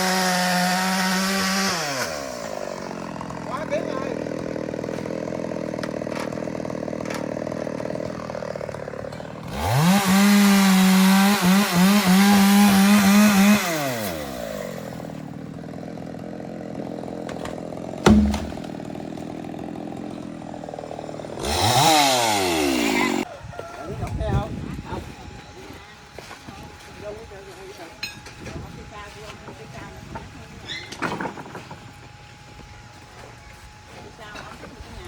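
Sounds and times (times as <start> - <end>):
chainsaw idling and revving: 0.0 - 23.3
sharp knock: 18.0 - 18.7.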